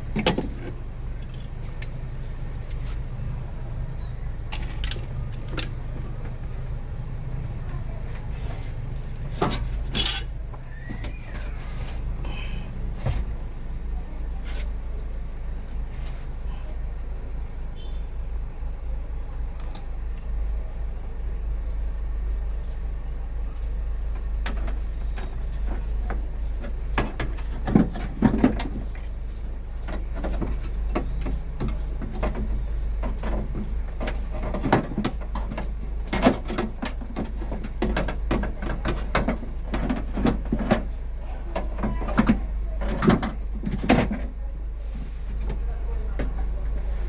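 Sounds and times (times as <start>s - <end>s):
steady low hum: 0.0s - 47.0s
clicks and knocks of tools: 4.5s - 5.8s.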